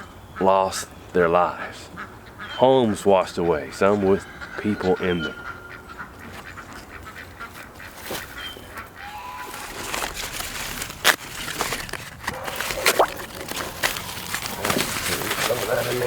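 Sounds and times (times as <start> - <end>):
poultry calling: 0.0 - 10.8.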